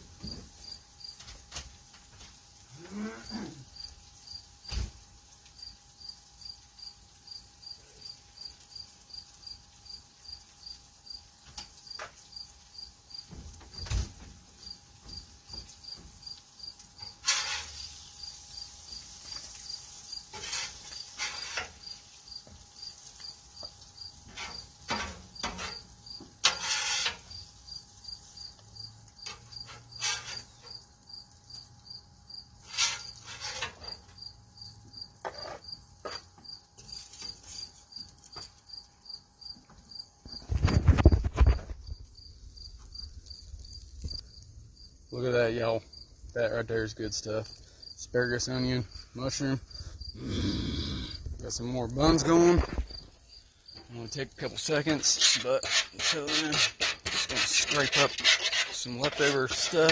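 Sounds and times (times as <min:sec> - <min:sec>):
cricket chirping: 0:02.8 - 0:13.9, 0:14.6 - 0:59.9
harsh scraping bursts: 0:17.1 - 0:17.9, 0:26.4 - 0:27.3, 0:29.4 - 0:30.7, 0:32.6 - 0:34.0, 0:54.0 - 0:59.9.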